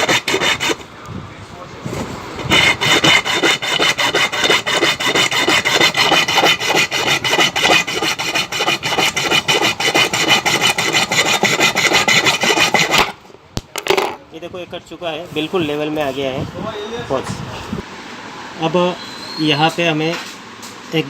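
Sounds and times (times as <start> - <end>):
hacksaw cutting metal: 0.0 - 0.8, 2.4 - 13.2.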